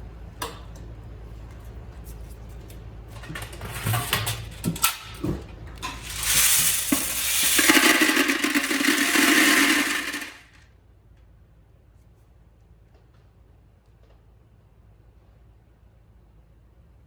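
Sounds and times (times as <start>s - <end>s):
debris rattling through vacuum hose: 3.2s - 10.5s.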